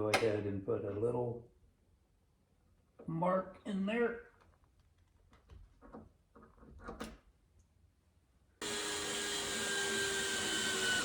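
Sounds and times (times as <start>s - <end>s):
power drill running: 8.6s - 11.0s.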